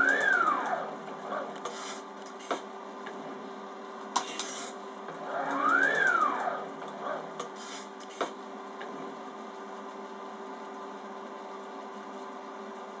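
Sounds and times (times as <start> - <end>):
machine motor whine: 0.0 - 2.4, 3.0 - 10.8.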